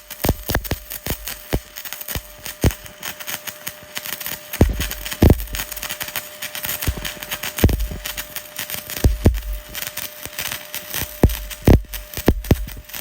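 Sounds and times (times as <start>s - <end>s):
welding arc crackling: 0.0s - 13.0s
faint steady hum: 4.5s - 13.0s.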